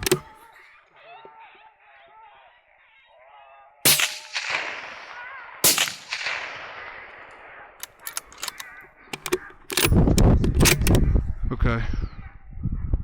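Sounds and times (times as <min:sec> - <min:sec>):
rifle shots with echo: 0:03.8 - 0:11.0.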